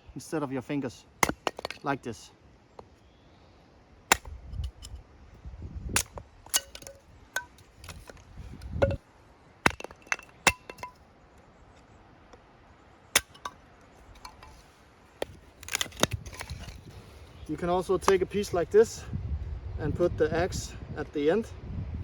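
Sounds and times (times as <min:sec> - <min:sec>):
axe chopping firewood: 0:01.2 - 0:01.9, 0:04.1 - 0:05.0, 0:06.0 - 0:09.0, 0:09.7 - 0:11.0, 0:13.2 - 0:13.6, 0:14.2 - 0:14.6, 0:15.2 - 0:17.0.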